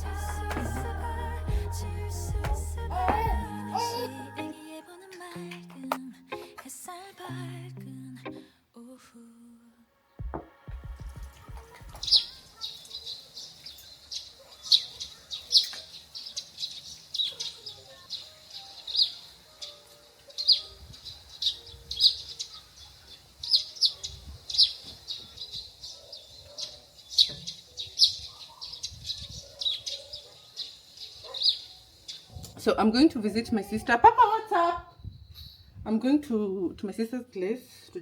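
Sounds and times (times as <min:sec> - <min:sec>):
small birds chirping: 0:11.4 - 0:32.6.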